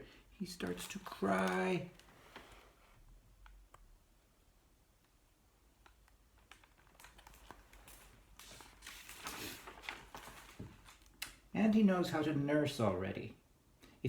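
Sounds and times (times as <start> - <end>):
paper rustling: 0.4 - 2.8, 6.3 - 11.2
small clicks of book handling: 0.6 - 3.9, 5.0 - 11.5.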